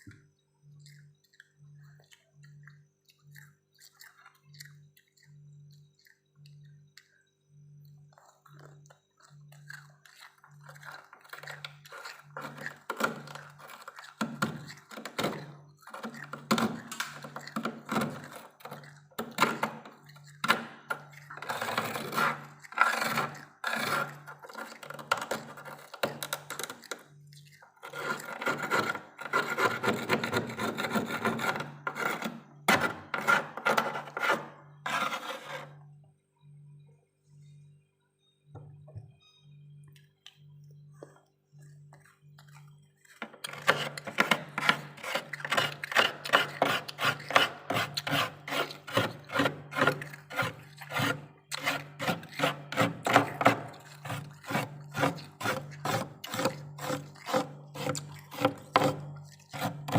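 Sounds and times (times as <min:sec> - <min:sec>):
spoon scraping frost: 0:07.8 - 0:35.9, 0:41.0 - 0:59.9.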